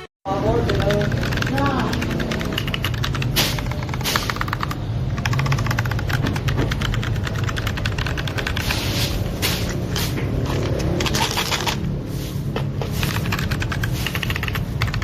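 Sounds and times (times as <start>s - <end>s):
mechanical keyboard typing: 0.4s - 8.8s, 10.4s - 11.8s, 12.9s - 15.0s.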